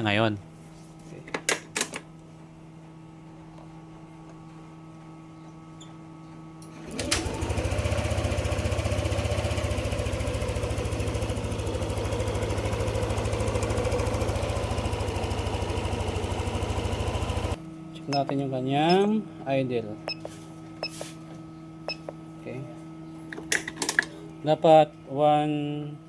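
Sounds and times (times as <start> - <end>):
scooter engine starting and idling: 6.8 - 17.6.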